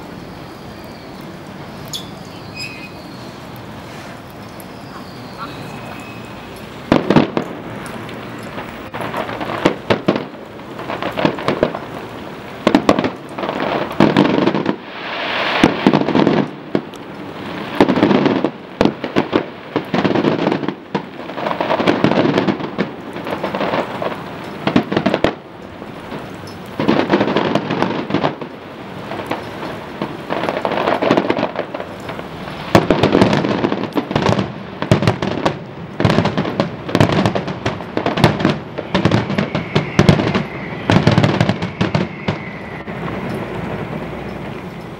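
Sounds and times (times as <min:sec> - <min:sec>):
firework crackling: 0:00.0 - 0:44.9
firework shell bursts and bangs: 0:06.9 - 0:25.4, 0:29.1 - 0:44.4.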